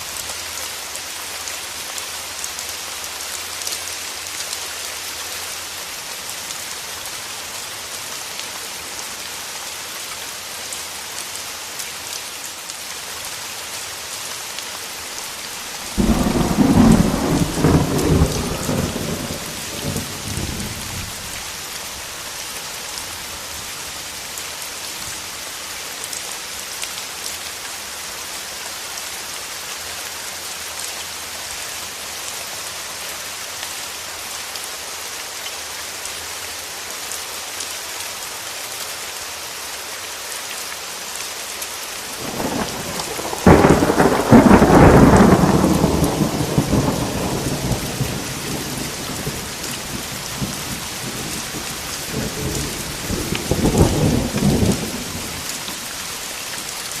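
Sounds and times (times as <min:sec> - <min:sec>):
heavy rain: 0:00.0 - 0:57.0
thunder rumbling: 0:15.8 - 0:21.2, 0:42.2 - 0:55.8.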